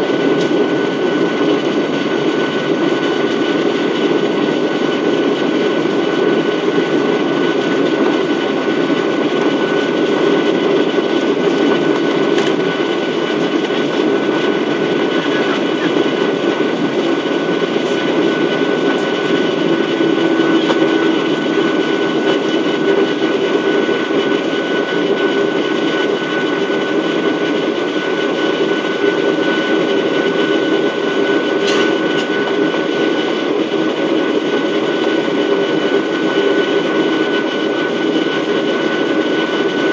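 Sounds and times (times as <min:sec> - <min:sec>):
jet engine drone and rushing air: 0:00.0 - 0:39.9.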